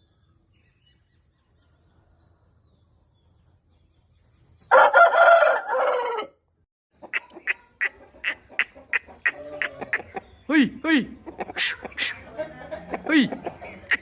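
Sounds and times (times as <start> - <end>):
rooster crowing: 4.7 - 6.4
short sharp calls: 7.1 - 12.3, 12.9 - 14.0.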